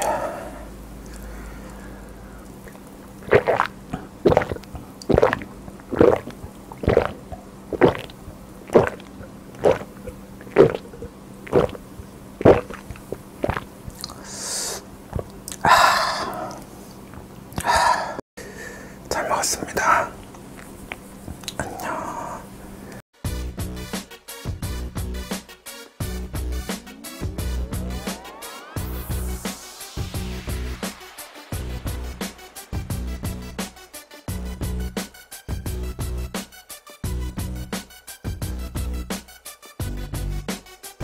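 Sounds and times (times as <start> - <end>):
breathy rushing sounds: 0.0 - 2.5
wet chewing mouth clicks: 2.4 - 11.8, 12.4 - 14.2, 15.1 - 15.7, 20.9 - 21.8.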